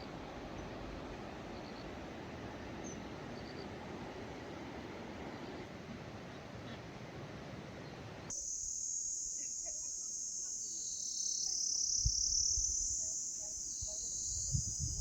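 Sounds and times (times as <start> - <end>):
steady rushing hiss: 0.0 - 15.0
faint chirps: 8.3 - 15.0
high-pitched insect chorus: 8.3 - 15.0.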